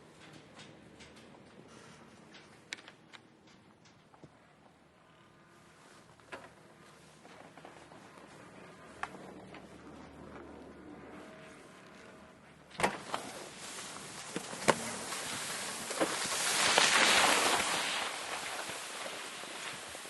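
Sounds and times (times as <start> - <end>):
skis sliding on snow: 13.0 - 20.0.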